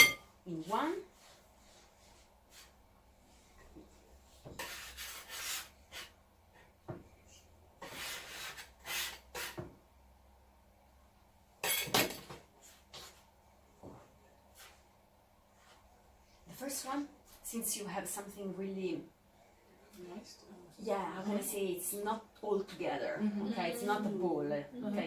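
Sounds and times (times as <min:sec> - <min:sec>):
hands scraping dough: 0:04.5 - 0:06.2.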